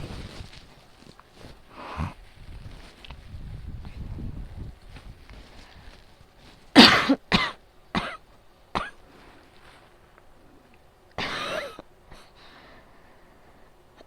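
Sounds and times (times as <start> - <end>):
person coughing: 6.8 - 8.2, 8.8 - 9.0, 11.2 - 12.3.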